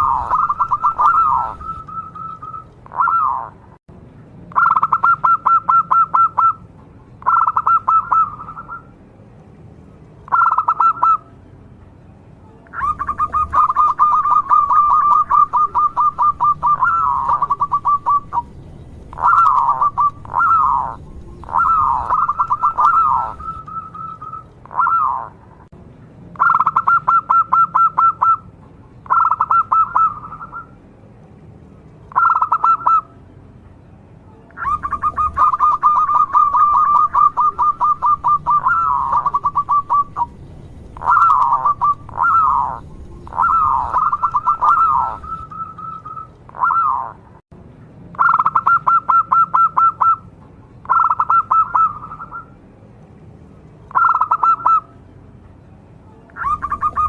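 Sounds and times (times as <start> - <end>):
dove cooing: 0.0 - 3.6, 4.5 - 6.6, 7.2 - 8.9, 10.3 - 11.2, 12.7 - 25.4, 26.4 - 28.4, 29.1 - 30.7, 32.1 - 33.1, 34.6 - 47.2, 48.2 - 50.2, 50.9 - 52.5, 53.9 - 54.9, 56.4 - 57.0.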